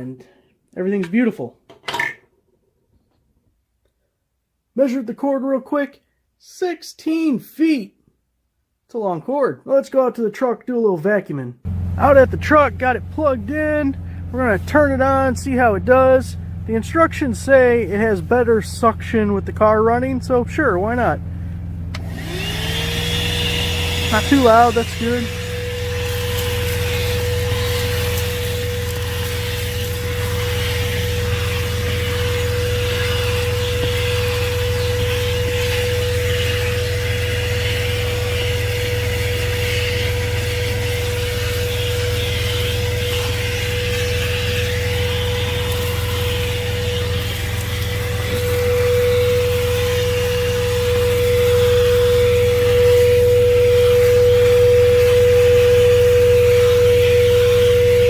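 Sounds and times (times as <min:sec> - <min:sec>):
car engine idling hum: 0:11.7 - 0:58.0
handheld vacuum running: 0:11.7 - 0:58.0.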